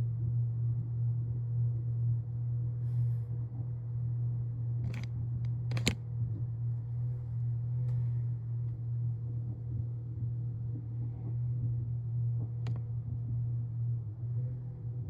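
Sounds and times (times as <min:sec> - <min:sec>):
sharp clicks: 0:04.9 - 0:05.1, 0:05.7 - 0:06.0.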